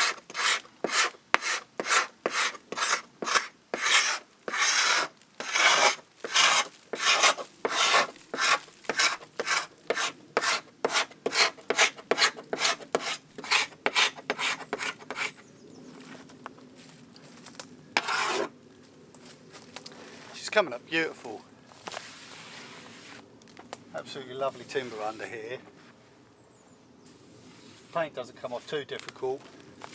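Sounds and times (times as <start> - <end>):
scraper rasping on wood: 0.0 - 15.4, 18.0 - 18.5.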